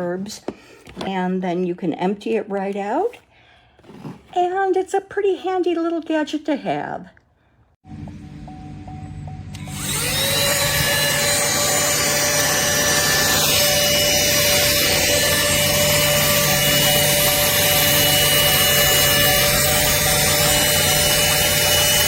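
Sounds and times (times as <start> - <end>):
handheld vacuum motor whining: 9.5 - 22.0.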